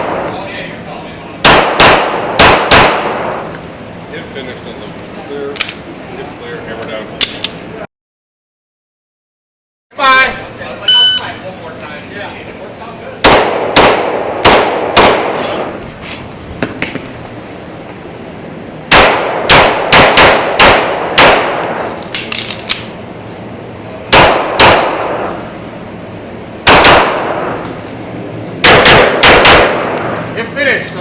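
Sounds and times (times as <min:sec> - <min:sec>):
pistol shots echoing indoors: 0:01.4 - 0:03.3, 0:13.2 - 0:15.4, 0:18.9 - 0:21.7, 0:24.1 - 0:25.3, 0:26.6 - 0:27.6, 0:28.6 - 0:30.1.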